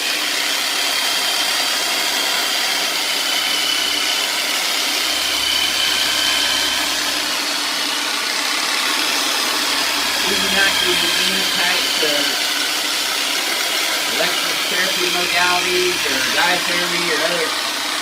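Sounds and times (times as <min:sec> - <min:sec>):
massage tool whining: 0:00.0 - 0:18.0
deeper hum: 0:03.4 - 0:08.2, 0:09.2 - 0:13.0, 0:14.0 - 0:17.8.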